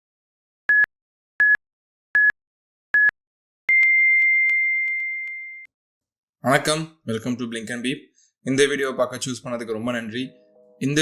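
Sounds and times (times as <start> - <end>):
electronic countdown beeps: 2.2 - 2.4, 3.0 - 5.7.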